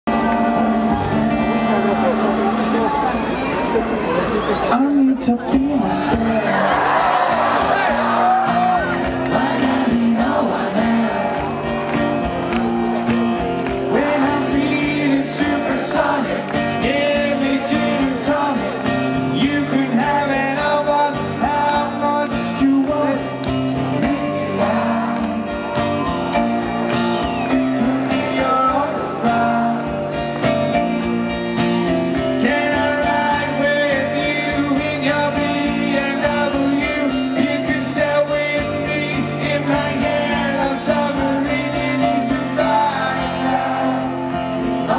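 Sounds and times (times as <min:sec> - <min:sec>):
live rock band: 0:00.1 - 0:44.9
person singing: 0:13.8 - 0:26.1, 0:27.4 - 0:30.2, 0:32.3 - 0:44.1.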